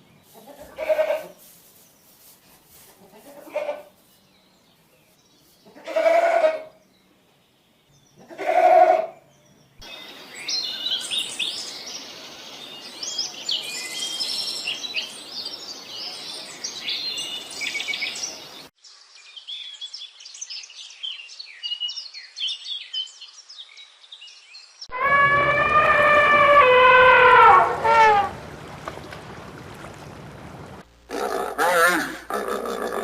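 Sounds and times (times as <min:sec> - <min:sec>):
animal bleat: 0:00.4 - 0:01.4, 0:03.0 - 0:03.9, 0:05.6 - 0:06.7, 0:08.2 - 0:09.2, 0:24.9 - 0:28.3, 0:31.1 - 0:33.0.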